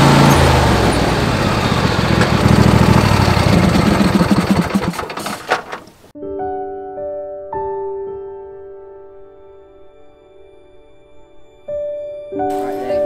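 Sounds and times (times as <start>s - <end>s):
engine running low hum: 0.0s - 5.8s
piano music: 6.1s - 13.0s.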